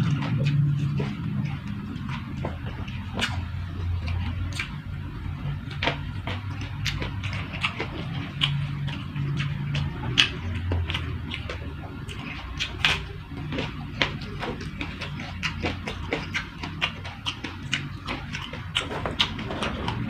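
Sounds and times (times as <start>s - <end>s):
chewing crunchy food: 0.0s - 20.0s
low steady hum: 0.0s - 20.0s.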